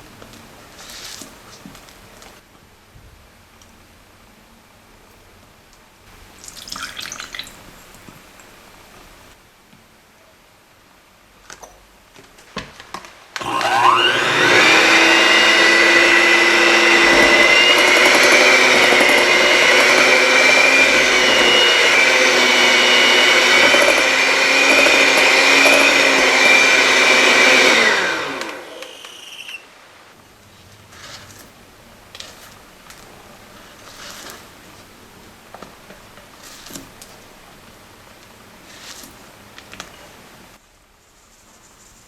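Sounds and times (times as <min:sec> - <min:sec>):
kitchen appliance motor running: 0:13.4 - 0:29.6.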